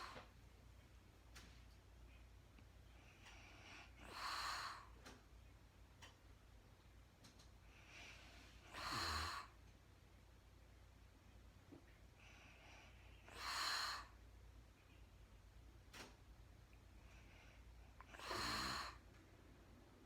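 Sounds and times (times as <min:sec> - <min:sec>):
woman breathing heavily: 0:00.0 - 0:00.3, 0:02.8 - 0:05.2, 0:07.6 - 0:09.6, 0:17.0 - 0:19.1
low snore: 0:08.7 - 0:09.6, 0:18.1 - 0:19.0.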